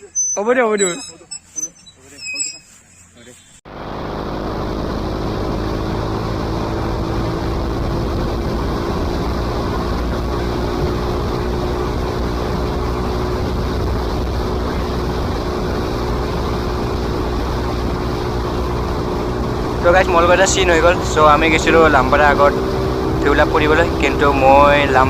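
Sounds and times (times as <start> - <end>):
motorcycle engine running: 3.7 - 25.0.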